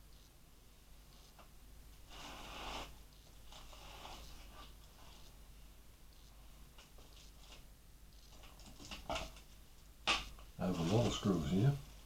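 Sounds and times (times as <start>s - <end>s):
faint handling rustles: 10.4s - 12.0s.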